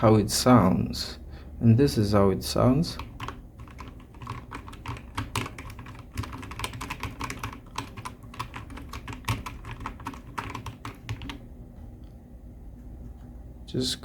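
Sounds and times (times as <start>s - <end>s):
mechanical keyboard typing: 2.9s - 11.4s.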